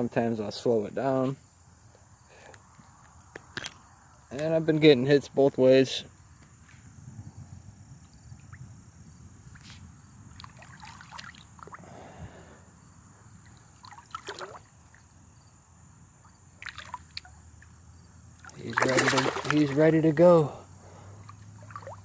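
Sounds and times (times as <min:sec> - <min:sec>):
low wind rumble: 0:06.2 - 0:10.7
water trickling and sloshing: 0:09.5 - 0:11.8, 0:13.3 - 0:15.2, 0:16.2 - 0:22.0.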